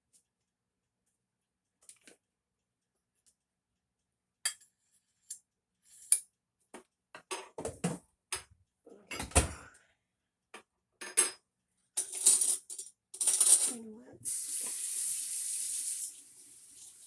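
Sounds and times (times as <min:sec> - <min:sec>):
dishes and cutlery clinking: 0:11.0 - 0:11.4, 0:12.0 - 0:13.8.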